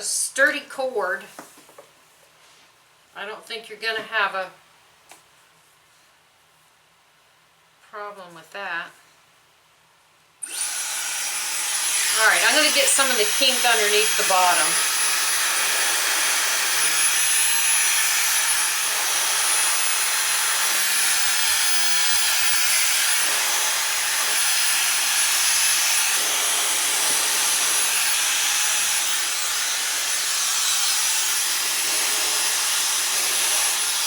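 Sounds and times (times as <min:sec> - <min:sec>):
hair dryer running: 0:10.4 - 0:34.0.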